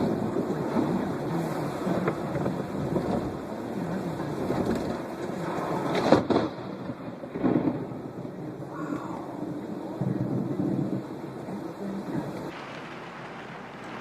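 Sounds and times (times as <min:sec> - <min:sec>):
steady rain: 0:00.0 - 0:14.0
thunder crack: 0:04.3 - 0:11.4, 0:12.5 - 0:14.0.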